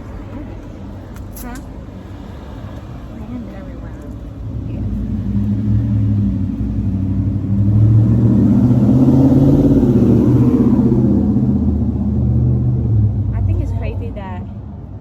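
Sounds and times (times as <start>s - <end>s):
vehicle engine rumbling: 0.0s - 15.0s.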